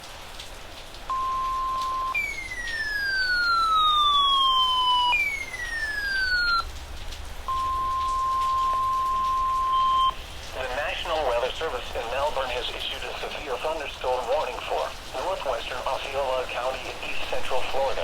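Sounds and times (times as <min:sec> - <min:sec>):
steady alert beep tone: 0:01.1 - 0:06.6, 0:07.5 - 0:10.2
falling siren-like sweeps: 0:01.3 - 0:06.7.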